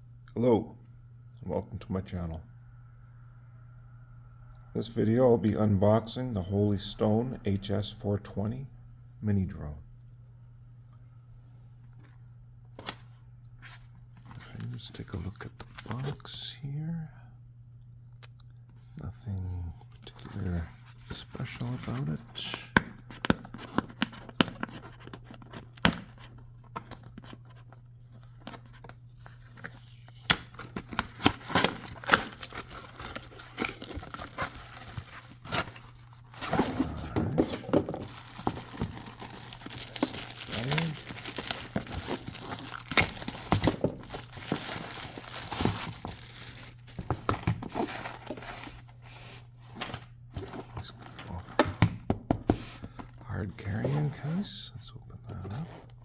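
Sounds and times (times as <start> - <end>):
packaging tearing: 29.2 - 47.1
plastic crinkling: 29.6 - 47.3.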